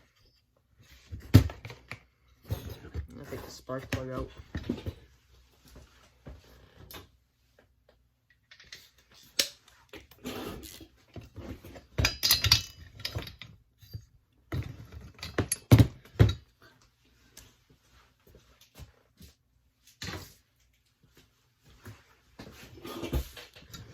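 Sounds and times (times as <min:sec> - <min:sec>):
metal hand tools clattering: 0:12.0 - 0:13.5.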